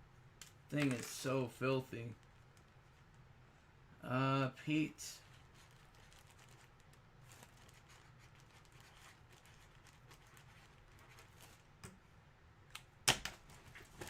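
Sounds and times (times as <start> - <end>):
faint clicks and rustles: 2.0 - 3.4, 5.2 - 12.0.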